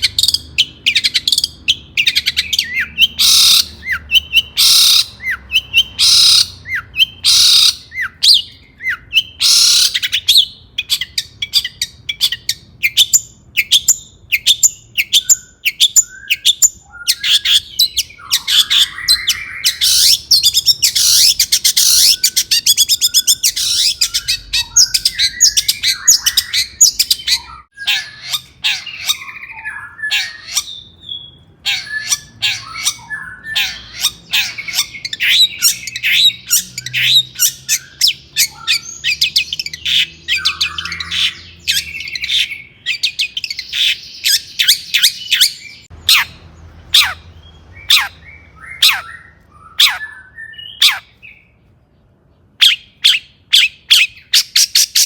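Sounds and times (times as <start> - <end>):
bird harsh rasping notes: 0.0 - 51.5
bird singing sharp chirps: 0.0 - 51.6.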